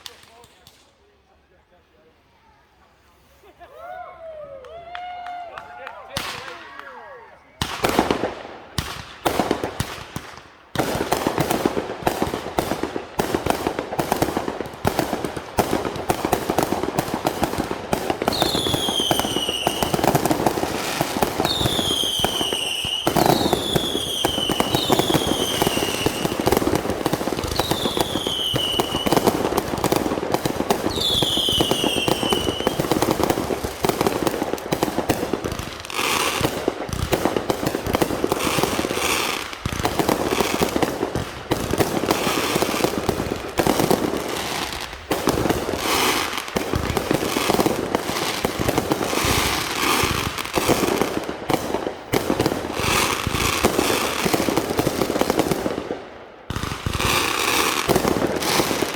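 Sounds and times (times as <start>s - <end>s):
firework bangs: 6.1s - 58.9s
falling firework whistles: 21.4s - 26.4s, 27.4s - 29.3s, 30.9s - 33.0s.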